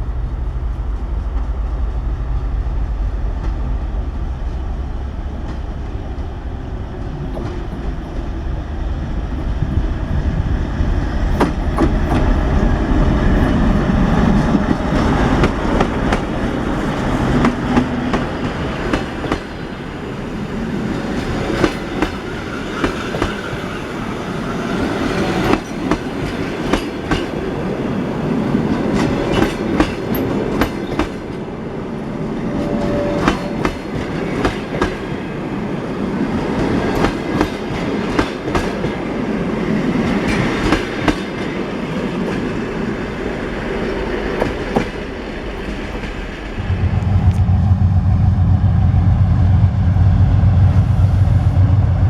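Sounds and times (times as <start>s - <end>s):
railway wheels clicking on rail joints: 0.0s - 31.5s, 32.3s - 47.6s
loud steady low hum: 46.6s - 52.0s.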